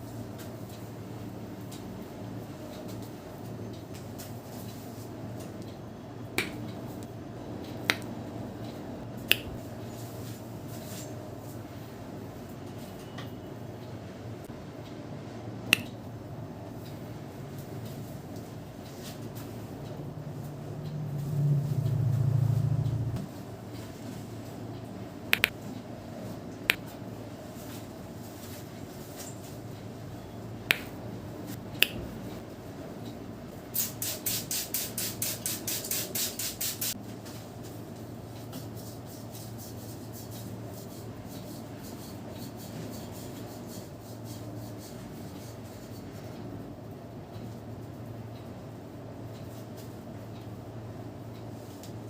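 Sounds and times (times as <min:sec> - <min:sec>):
steady low hum: 0:00.0 - 0:33.7
hands cracking during head massage: 0:25.4 - 0:25.6.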